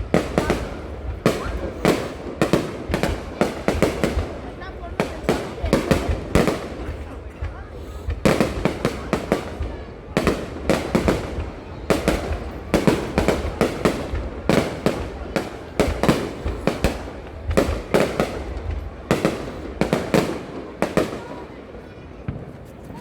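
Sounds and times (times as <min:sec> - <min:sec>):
fireworks bangs: 0:00.0 - 0:23.0.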